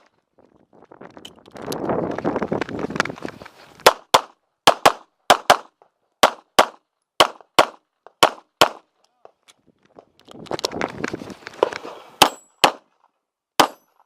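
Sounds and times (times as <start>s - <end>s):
handgun shots: 13.6s - 13.9s.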